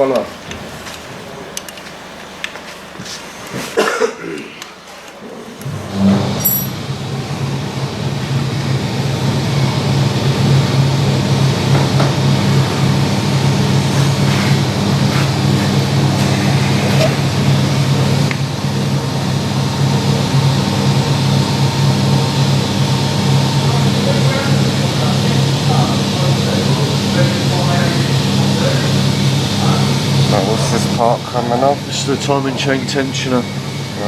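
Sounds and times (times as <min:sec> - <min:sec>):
low mechanical hum: 0:00.0 - 0:34.0
faint clicks: 0:00.2 - 0:03.7.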